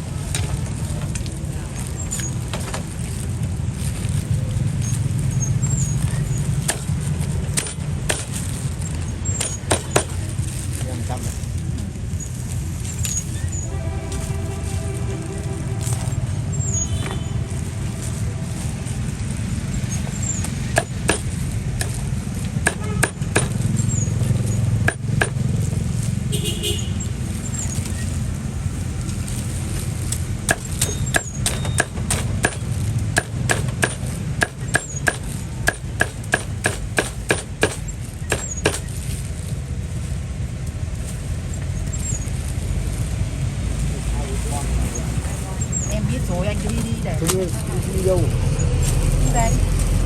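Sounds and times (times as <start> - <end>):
low rumble of street traffic: 0.0 - 50.0
sharp knocks: 20.8 - 23.6, 24.8 - 25.4, 30.5 - 38.9.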